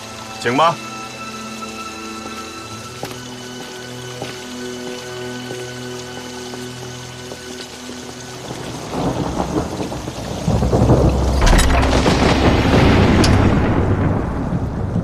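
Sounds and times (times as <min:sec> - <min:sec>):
rain: 0:00.0 - 0:15.0
thunder rumbling: 0:08.4 - 0:15.0
sharp thunder cracks: 0:08.9 - 0:15.0.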